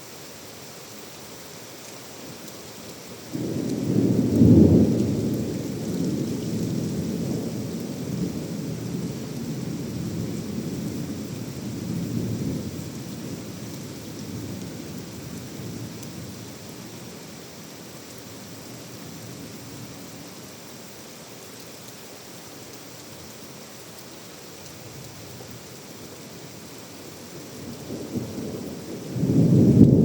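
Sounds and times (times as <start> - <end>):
heavy rain: 0.0 - 30.0
thunder rumbling: 3.3 - 10.8, 27.4 - 30.0.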